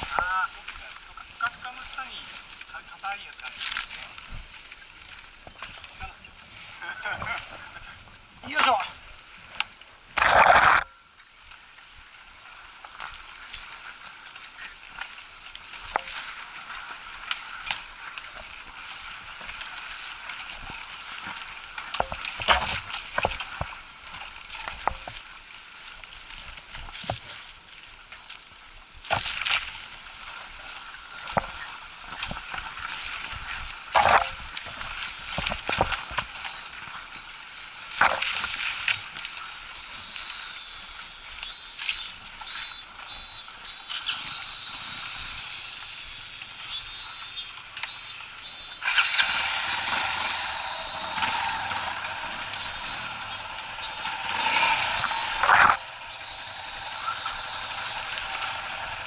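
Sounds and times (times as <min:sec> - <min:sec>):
high-pitched trilling animal calls: 0:39.2 - 0:59.0.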